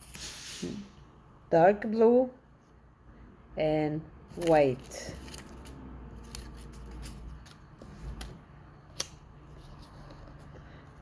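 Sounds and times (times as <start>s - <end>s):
paper rustles and small clicks: 4.4s - 10.7s.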